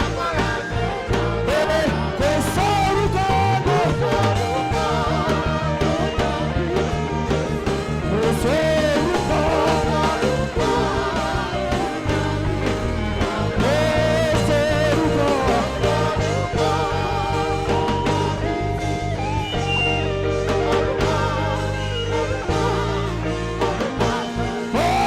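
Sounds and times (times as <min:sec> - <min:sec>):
backing band with bass: 0:00.0 - 0:25.0
saxophone melody: 0:16.3 - 0:25.0.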